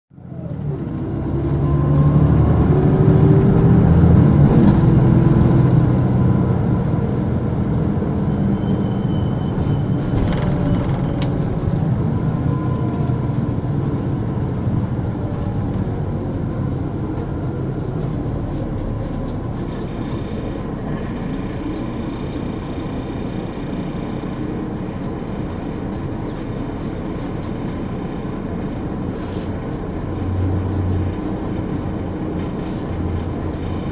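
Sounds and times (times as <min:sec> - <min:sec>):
bus diesel engine: 0:00.1 - 0:33.9.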